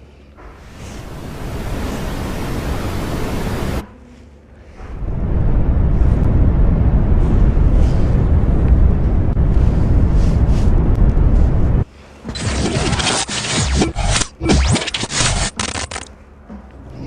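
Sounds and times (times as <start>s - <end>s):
deep bass rumble: 4.7s - 12.9s.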